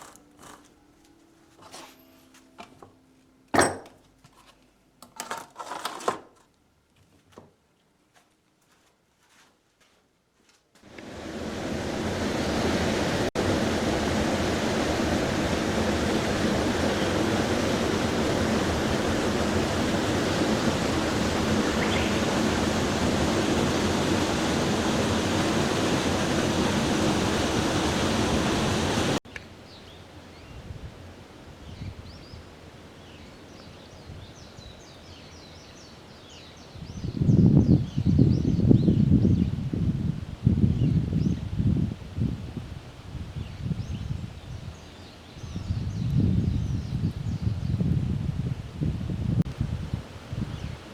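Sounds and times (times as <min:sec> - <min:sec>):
loud steady rushing noise: 0:10.9 - 0:29.2
small birds chirping: 0:21.7 - 0:22.4.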